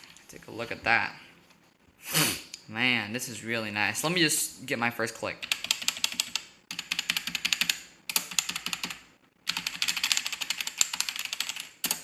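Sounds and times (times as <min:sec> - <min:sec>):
typing on mechanical keyboard: 0:05.4 - 0:12.0.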